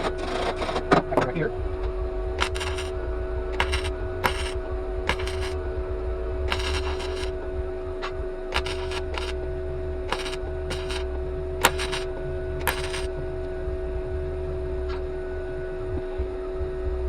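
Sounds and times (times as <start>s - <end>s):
welder hum: 2.2s - 7.6s, 8.5s - 13.5s
welding arc bursts: 2.4s - 5.6s, 6.5s - 7.4s, 8.5s - 9.4s, 10.1s - 13.1s.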